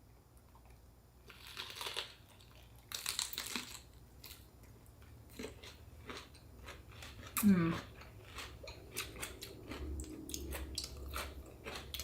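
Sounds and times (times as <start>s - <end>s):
crunching and chewing food: 0.3s - 12.0s.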